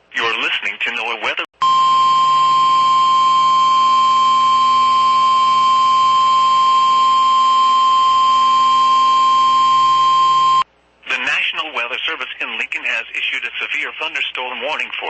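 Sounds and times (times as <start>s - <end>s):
steady high-pitched alarm tone: 1.6s - 10.6s.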